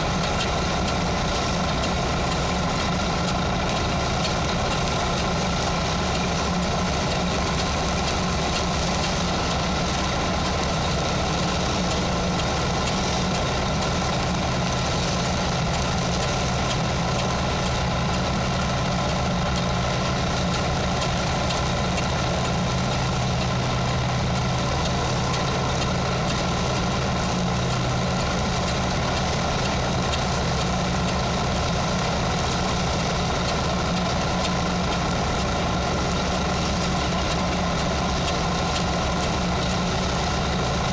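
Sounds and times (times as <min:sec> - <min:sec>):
welding arc crackling: 0:00.0 - 0:40.9.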